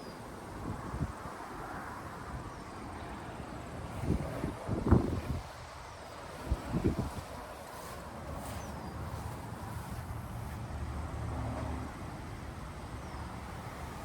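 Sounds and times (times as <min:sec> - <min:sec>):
wind buffeting microphone: 0:03.7 - 0:10.4.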